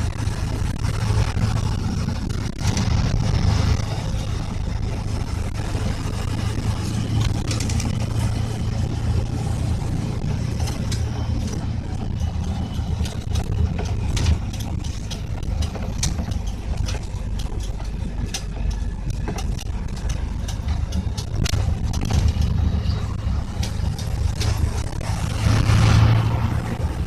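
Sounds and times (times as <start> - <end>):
engine humming: 0.0 - 27.0.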